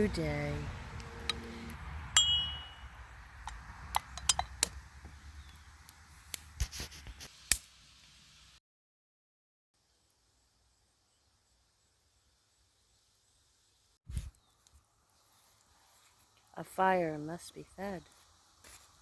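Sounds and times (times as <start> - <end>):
clear ringing ding: 2.2 - 2.9.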